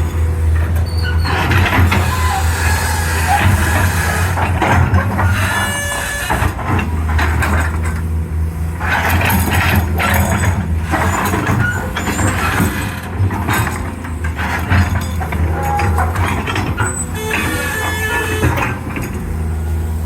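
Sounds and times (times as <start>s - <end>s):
metallic clanks and scraping: 0.0s - 8.1s, 8.8s - 19.8s
excavator diesel engine running: 0.0s - 20.0s
brief squeal: 0.8s - 4.3s, 16.8s - 18.8s.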